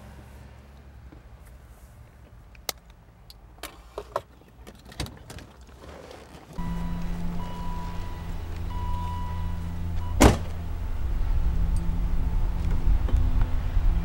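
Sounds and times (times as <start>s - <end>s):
hum with high held tone: 6.6s - 14.0s
car door clicks and knocks: 10.1s - 10.6s.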